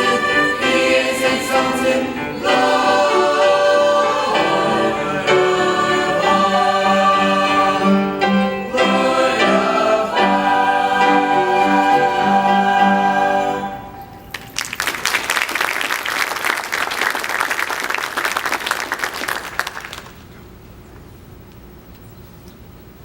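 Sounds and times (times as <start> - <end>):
choir holding chord: 0.0 - 14.2
congregation applauding: 14.1 - 20.3.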